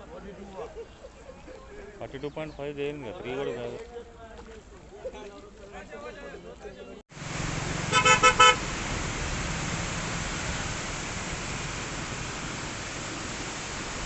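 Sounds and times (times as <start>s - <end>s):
steady rushing noise: 7.1s - 14.0s
vehicle horn tooting: 7.9s - 8.6s.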